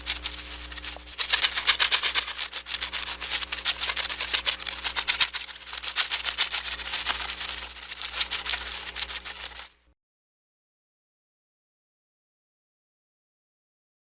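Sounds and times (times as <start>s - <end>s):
faint low hum: 0.0s - 9.8s
papery wing flaps: 0.0s - 9.8s.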